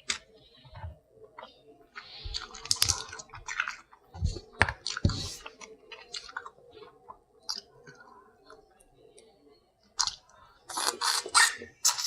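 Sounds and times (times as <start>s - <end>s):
close-up chewing: 2.3s - 8.1s.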